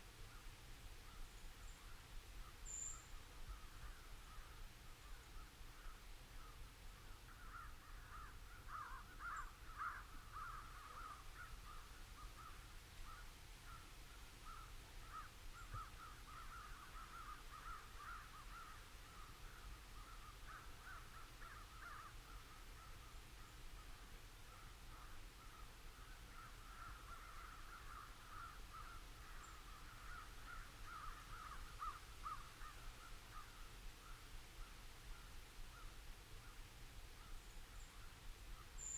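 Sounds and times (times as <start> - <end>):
crows cawing: 7.3 - 13.8, 14.5 - 22.2, 26.3 - 33.6.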